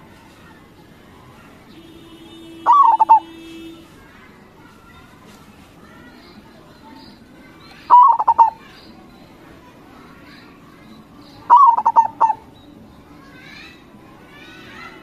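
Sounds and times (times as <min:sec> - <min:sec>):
faint bird chirping: 0:00.2 - 0:15.0
dove stuttering coos: 0:02.7 - 0:03.3, 0:07.9 - 0:08.6, 0:11.5 - 0:12.5.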